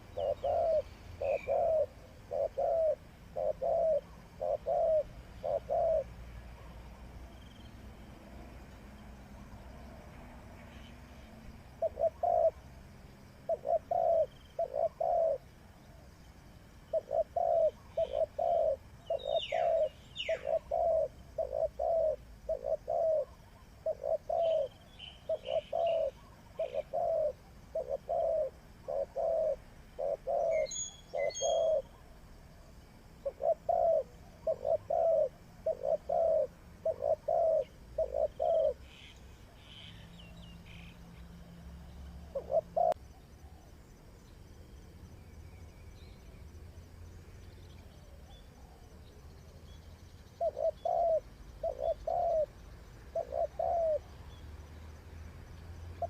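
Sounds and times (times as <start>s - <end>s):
dove cooing: 0.0s - 7.0s, 11.8s - 12.7s, 13.4s - 16.1s, 16.8s - 32.2s, 33.2s - 39.9s, 42.3s - 43.7s, 50.3s - 54.1s
small birds chirping: 0.0s - 9.1s, 10.1s - 56.0s.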